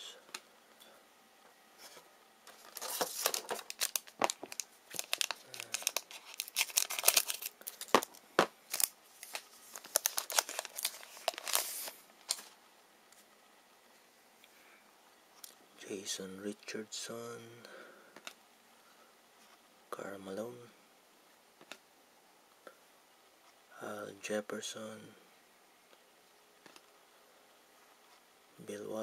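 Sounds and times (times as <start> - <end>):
card pack wrapper tearing and crinkling: 2.5 - 12.5.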